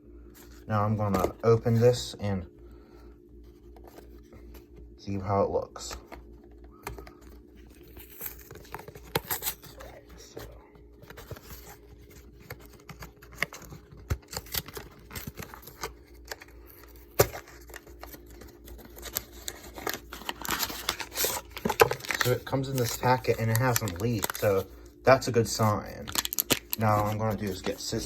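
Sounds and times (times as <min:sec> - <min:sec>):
paper packet crinkling: 0:07.0 - 0:28.0
cardboard box tearing: 0:07.8 - 0:09.9, 0:17.1 - 0:24.5, 0:26.1 - 0:28.0.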